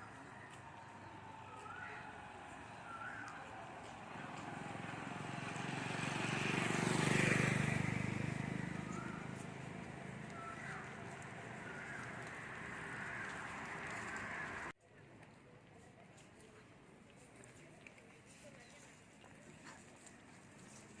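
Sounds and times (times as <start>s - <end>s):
motor vehicle passing by: 0.0s - 14.7s.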